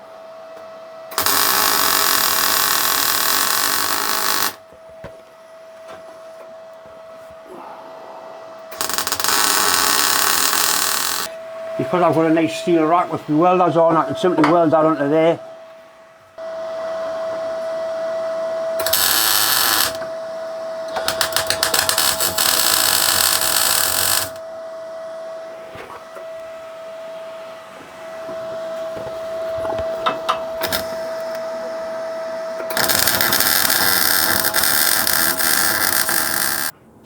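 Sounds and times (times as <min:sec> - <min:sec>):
steady high hum: 0:00.0 - 0:37.0
crackling hissing welding arc: 0:01.1 - 0:04.6, 0:08.7 - 0:11.3, 0:18.8 - 0:20.0, 0:21.0 - 0:24.4, 0:30.6 - 0:31.4, 0:32.7 - 0:36.8.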